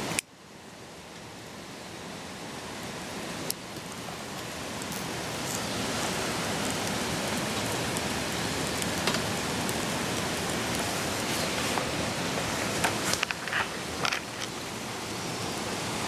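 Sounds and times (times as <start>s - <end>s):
wood crackling in fire: 0.0s - 16.0s
steady rushing noise: 0.8s - 16.0s.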